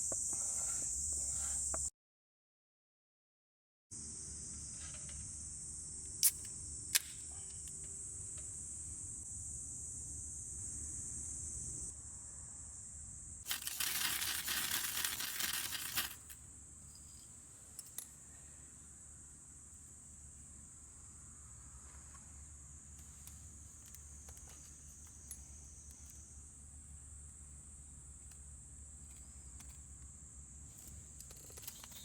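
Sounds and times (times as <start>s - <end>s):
crickets chirring: 0.0s - 1.9s, 4.0s - 32.0s
loud rustling: 13.5s - 16.4s.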